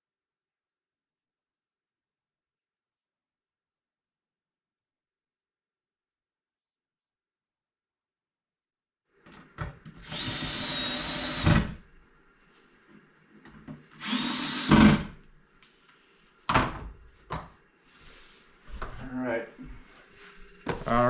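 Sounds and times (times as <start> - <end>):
power drill driving screws: 9.9 - 11.8, 14.0 - 15.2.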